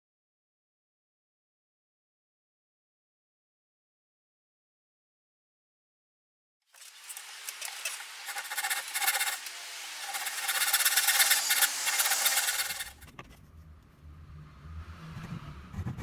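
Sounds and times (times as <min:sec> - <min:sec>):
hand tool rasping wood: 0:06.8 - 0:13.0.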